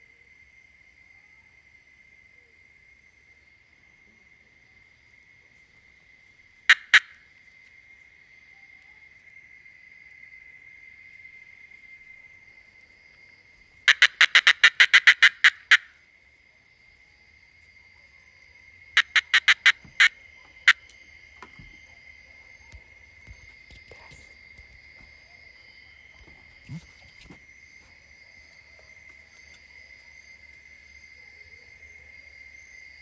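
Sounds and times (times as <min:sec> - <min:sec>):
cicada clicking: 0:06.0 - 0:33.0.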